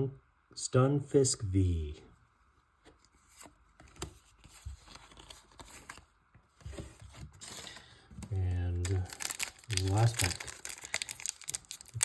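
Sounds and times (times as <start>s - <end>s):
trading cards tapping and rustling: 6.6s - 12.0s.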